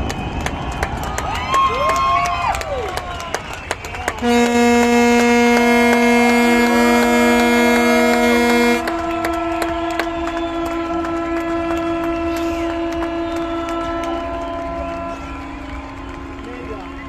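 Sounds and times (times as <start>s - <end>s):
ship horns blasting: 4.2s - 16.4s.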